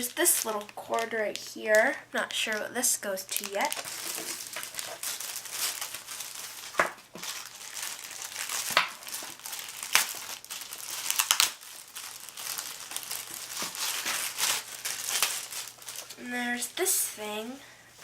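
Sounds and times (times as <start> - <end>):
packaging crinkling: 0.0 - 16.2.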